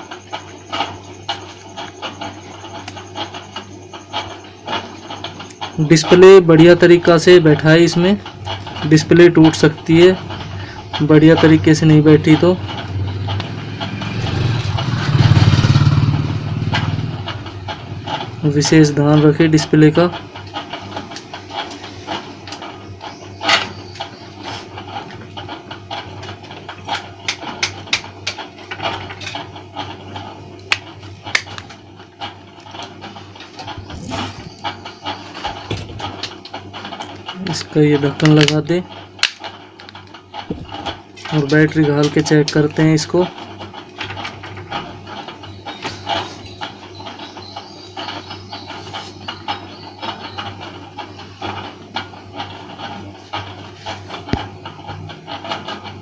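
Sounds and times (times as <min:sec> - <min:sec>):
steady low hum: 0:00.0 - 0:56.0
plastic parts clicking: 0:37.4 - 0:42.8.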